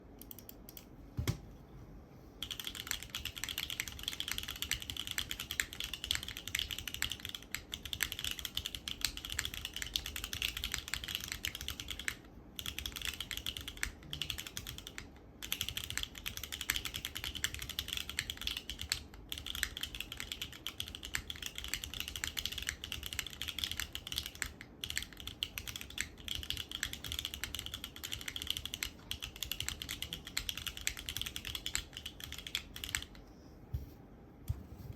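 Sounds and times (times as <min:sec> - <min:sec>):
fast typing on mechanical keyboard: 0:02.4 - 0:33.2.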